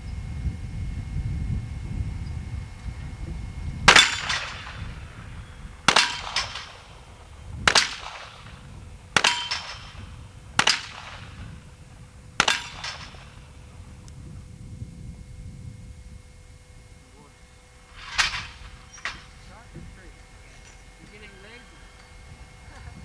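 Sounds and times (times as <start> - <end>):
revolver gunshots with echo: 3.9 - 14.0, 17.9 - 20.1.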